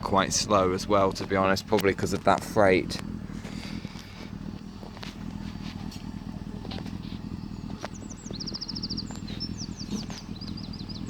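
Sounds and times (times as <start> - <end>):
train diesel engine droning: 0.0 - 11.0
small bird chirping: 6.7 - 11.0.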